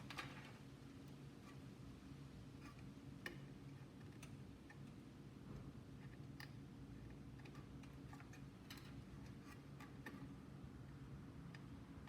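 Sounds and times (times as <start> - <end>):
small clicks and taps: 2.6 - 10.3.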